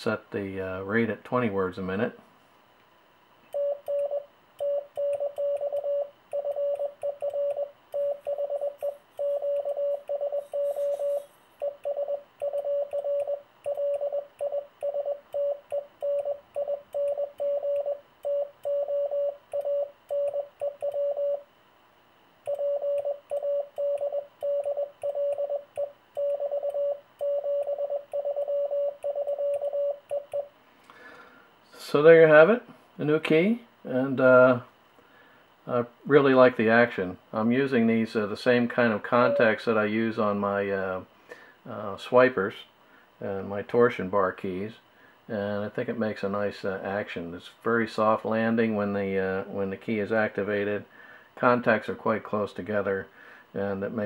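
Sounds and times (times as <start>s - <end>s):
morse code beeps: 3.6s - 21.5s, 22.5s - 30.5s, 39.2s - 39.6s.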